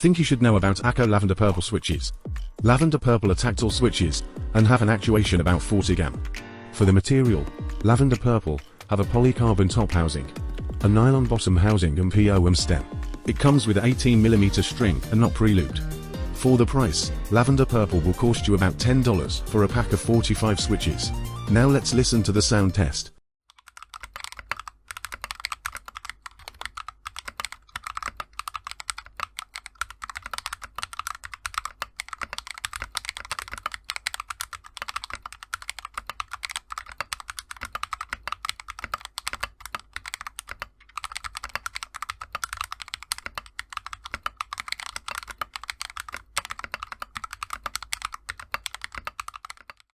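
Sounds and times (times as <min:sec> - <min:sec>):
mechanical keyboard keystroke clacks: 0:23.5 - 0:49.9.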